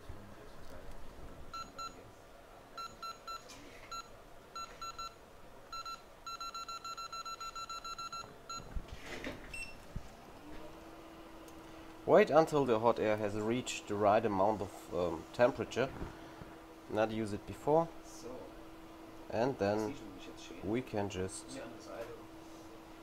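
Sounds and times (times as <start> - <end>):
short electronic beeps: 2.8 - 8.6.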